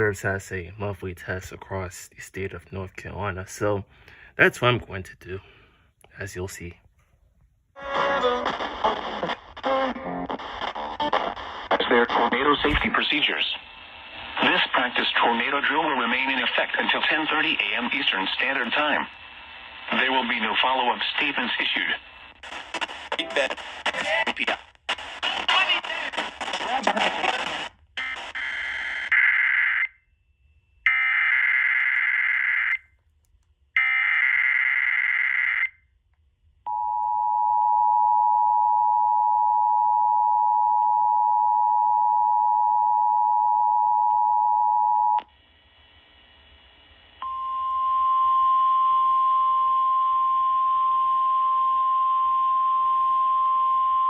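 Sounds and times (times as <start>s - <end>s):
data bursts from radio: 7.8s - 19.1s, 19.7s - 28.9s.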